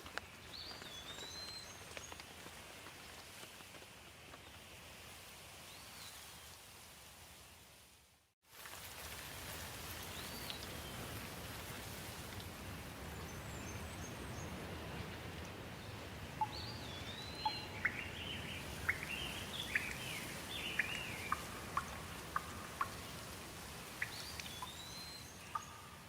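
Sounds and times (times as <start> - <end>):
steady hiss: 0.0 - 26.0
birds chirping: 16.4 - 22.9.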